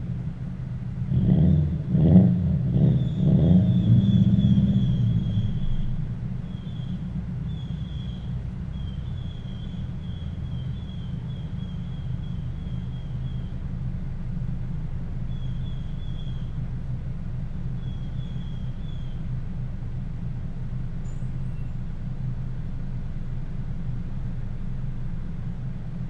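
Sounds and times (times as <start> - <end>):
moving car: 0.0 - 26.0
faint high chirping: 3.0 - 13.6, 15.2 - 16.6, 17.8 - 19.3, 21.0 - 21.9.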